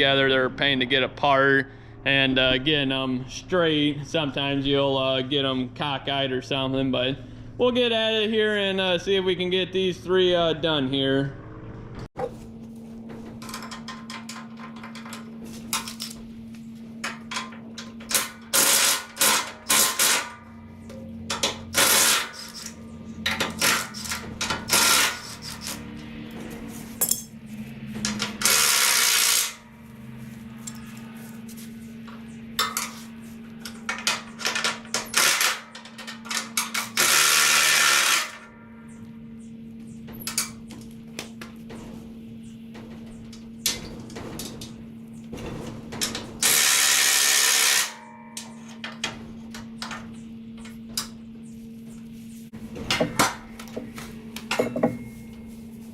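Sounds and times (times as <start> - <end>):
steady low hum: 0.0 - 55.9
metallic clanks and clicks: 13.3 - 16.3, 28.0 - 29.5, 47.8 - 51.2
power tool running: 18.0 - 20.6, 21.5 - 26.3, 27.8 - 30.2, 33.9 - 38.5, 46.4 - 48.0.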